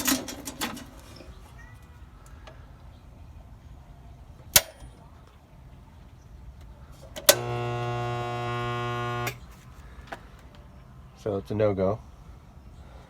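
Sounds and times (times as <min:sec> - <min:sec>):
pool pump motor humming: 0:07.2 - 0:09.5.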